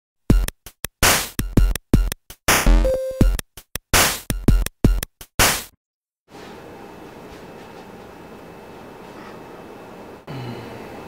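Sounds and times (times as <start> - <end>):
electronic music with drum machine: 0.3 - 5.7.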